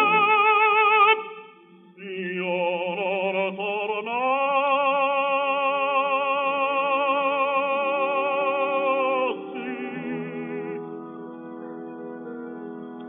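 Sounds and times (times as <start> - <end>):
operatic tenor singing: 0.0 - 12.4
instrumental accompaniment: 9.2 - 13.0.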